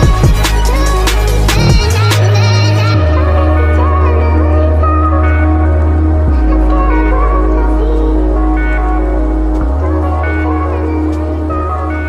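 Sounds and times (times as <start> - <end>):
sustained synth chords: 0.0 - 12.0
deep held bass note: 1.2 - 2.7.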